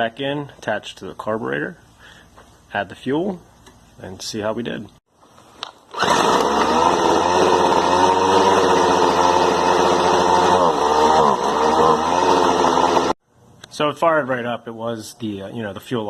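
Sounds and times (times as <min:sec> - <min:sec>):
string trimmer engine running: 0:05.9 - 0:13.2.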